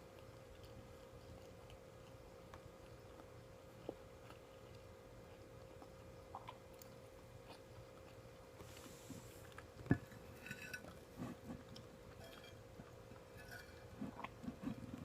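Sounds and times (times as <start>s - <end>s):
person chewing: 0.1s - 9.8s.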